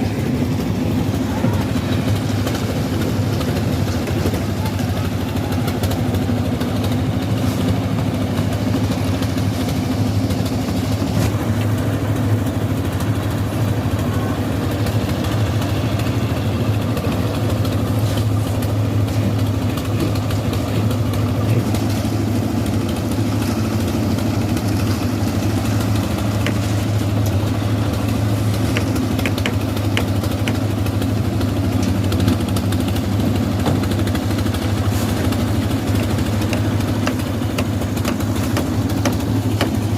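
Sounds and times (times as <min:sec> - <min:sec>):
heavy machinery engine running: 0:00.0 - 0:39.9.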